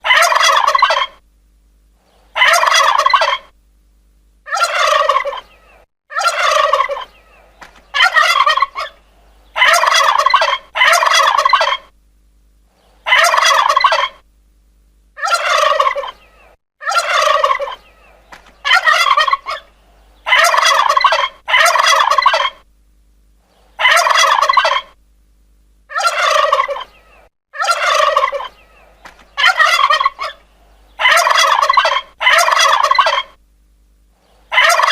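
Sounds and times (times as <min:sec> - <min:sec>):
turkey gobbling: 0:00.0 - 0:01.2, 0:02.3 - 0:03.6, 0:04.5 - 0:11.9, 0:13.0 - 0:14.2, 0:15.2 - 0:22.7, 0:23.7 - 0:25.0, 0:25.9 - 0:33.4, 0:34.5 - 0:34.9.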